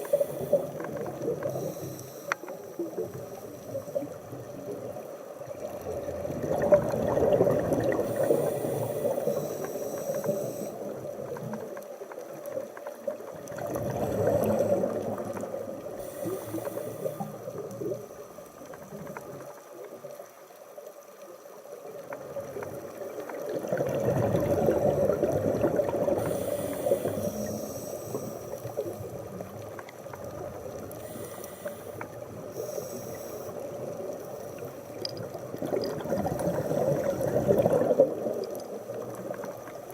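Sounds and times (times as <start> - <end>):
regulator inhale hiss: 0.0 - 4.2, 7.9 - 11.0, 15.9 - 17.7, 26.1 - 29.2, 30.9 - 35.0
exhaled bubbles gurgling underwater: 0.0 - 39.9.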